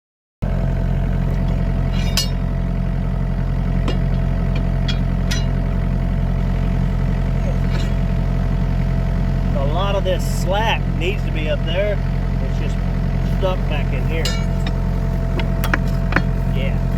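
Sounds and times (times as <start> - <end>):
excavator engine running: 0.4 - 16.9
sharp metallic clinks: 1.9 - 2.5, 4.0 - 5.6, 14.2 - 14.8.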